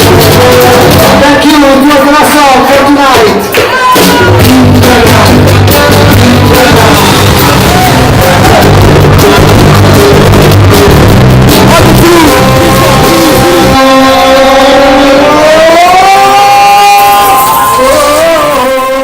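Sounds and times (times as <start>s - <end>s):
live band music: 0.0s - 1.5s, 3.2s - 14.4s.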